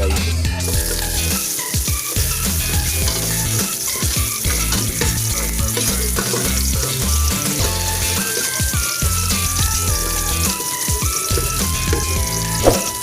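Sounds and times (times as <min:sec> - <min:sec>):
background music with pulsing bass: 0:00.0 - 0:08.2, 0:09.0 - 0:10.6
ginger sizzling in hot oil: 0:00.0 - 0:13.0.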